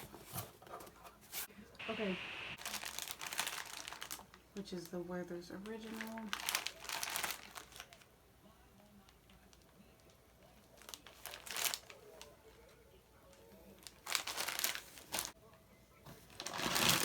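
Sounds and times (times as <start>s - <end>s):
plastic bags crinkling: 1.9s - 5.0s, 5.6s - 8.1s, 9.4s - 12.4s, 13.7s - 15.4s, 16.2s - 17.0s.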